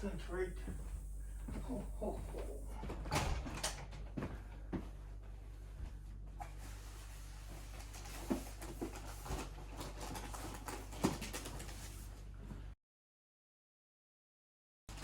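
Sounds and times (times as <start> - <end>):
steady low hum: 0.0 - 9.8.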